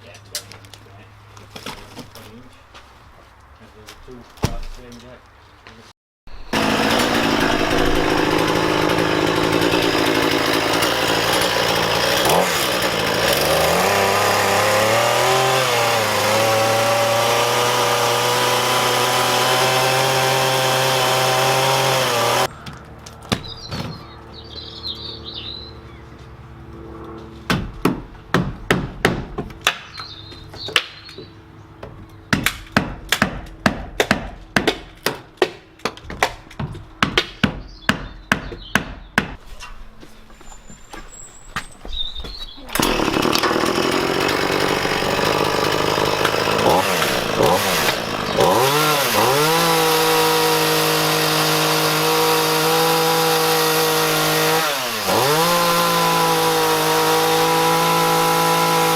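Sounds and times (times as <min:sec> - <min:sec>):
chainsaw cutting wood: 0:06.5 - 0:22.5, 0:42.7 - 0:58.9
bird chirping: 0:23.4 - 0:26.1, 0:29.9 - 0:31.4, 0:37.6 - 0:39.2, 0:40.4 - 0:42.8.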